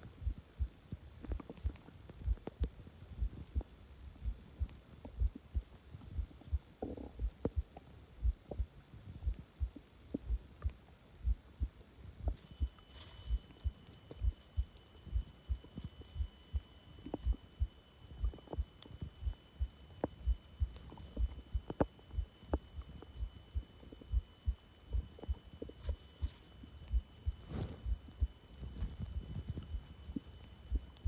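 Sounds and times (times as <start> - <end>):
heartbeat thumping: 0.1 - 31.0
stomach gurgles: 0.2 - 10.9.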